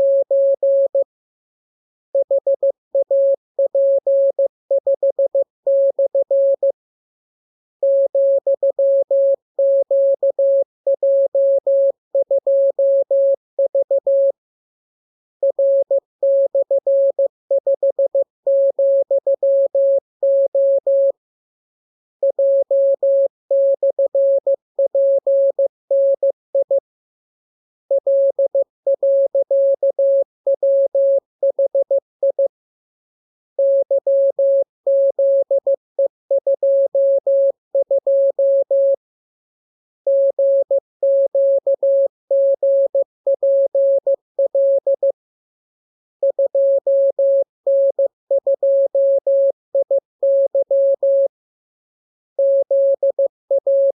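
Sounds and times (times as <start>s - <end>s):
morse code beeps: 40.1s - 41.8s.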